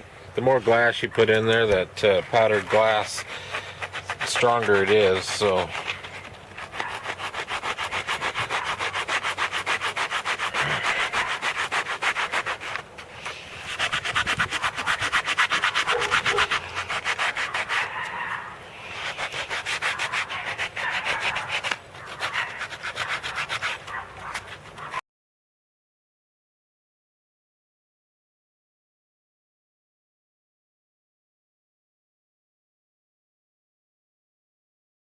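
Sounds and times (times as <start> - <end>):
sanding sponge rubbing plastic: 0.5 - 25.0.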